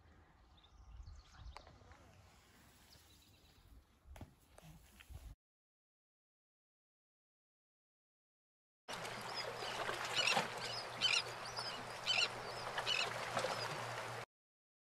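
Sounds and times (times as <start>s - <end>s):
bird chirping: 9.3s - 13.1s.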